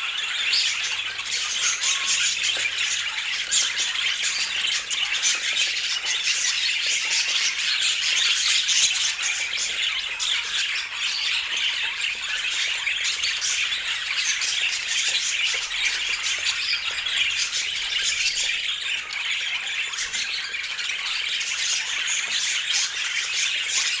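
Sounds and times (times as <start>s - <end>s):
budgerigars chattering: 0.0s - 24.0s.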